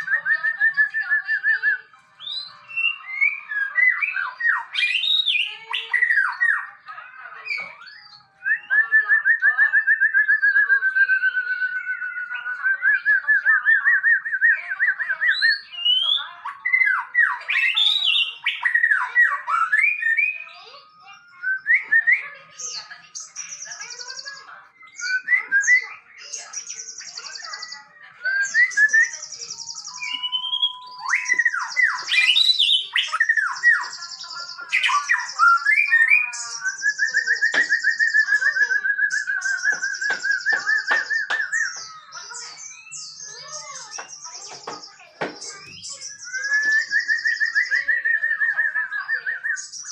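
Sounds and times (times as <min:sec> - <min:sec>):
bird singing whistled song: 0:00.0 - 0:49.9.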